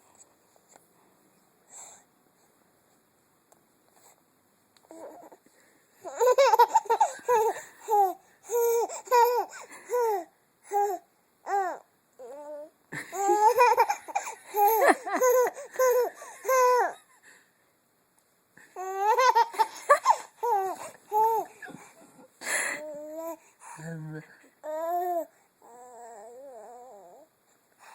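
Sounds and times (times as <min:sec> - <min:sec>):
baby laughing: 0:06.1 - 0:10.2, 0:13.0 - 0:17.0, 0:18.8 - 0:21.9.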